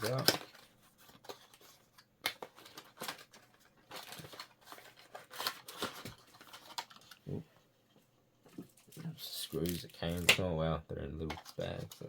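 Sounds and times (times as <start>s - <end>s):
packaging rustling and tearing: 0.0s - 7.2s.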